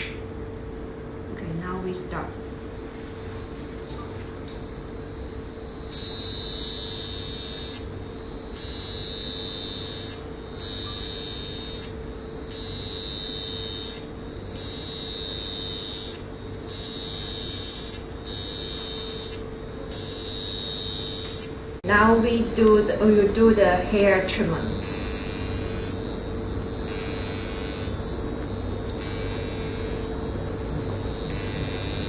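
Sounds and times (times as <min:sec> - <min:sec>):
machine low hum: 0:00.0 - 0:32.0
facial wand buzzing: 0:03.3 - 0:32.0.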